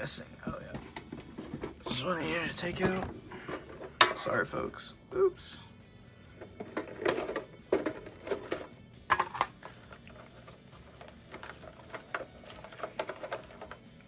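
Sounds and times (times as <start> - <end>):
card packs tapping and rustling: 0.5 - 2.0, 2.6 - 4.2, 6.5 - 13.9.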